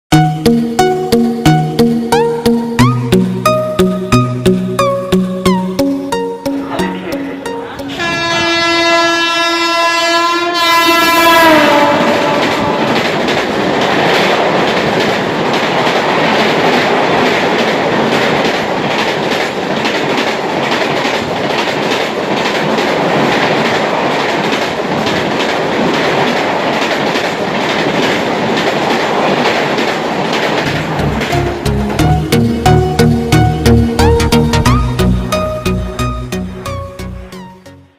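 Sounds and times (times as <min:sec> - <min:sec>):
locomotive horn honking: 0:06.6 - 0:13.0
train wheels clattering over rails: 0:11.2 - 0:36.2.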